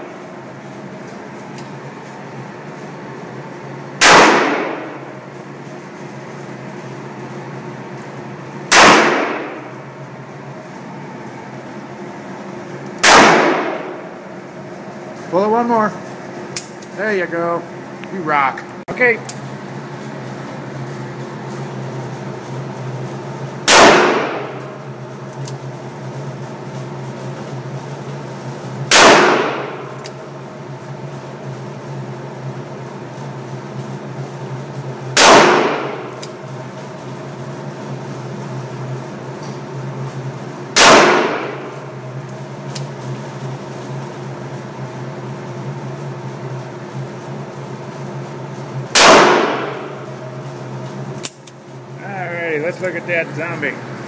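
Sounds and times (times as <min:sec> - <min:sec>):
ventilation hum: 0:00.0 - 0:54.0
revolver shots with echo: 0:04.0 - 0:05.1, 0:08.7 - 0:09.7, 0:13.0 - 0:14.1, 0:23.7 - 0:24.6, 0:28.9 - 0:29.9, 0:35.2 - 0:36.2, 0:40.8 - 0:41.8, 0:48.9 - 0:50.0.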